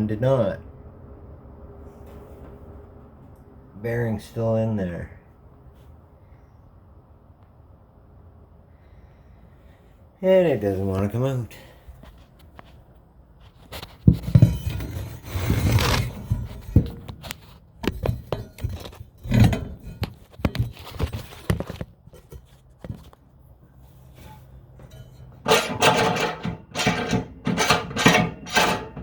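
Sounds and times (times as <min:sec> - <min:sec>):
metal clinks and scrapes: 0:13.4 - 0:23.1, 0:24.0 - 0:29.0.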